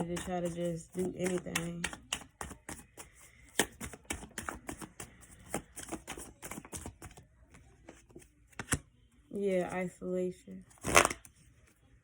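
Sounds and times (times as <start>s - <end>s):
cards being shuffled: 0.0s - 7.2s, 10.8s - 11.4s.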